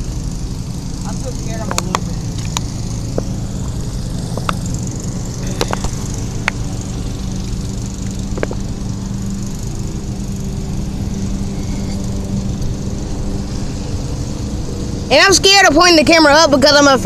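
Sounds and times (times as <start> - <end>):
low machine hum: 0.0 - 17.0.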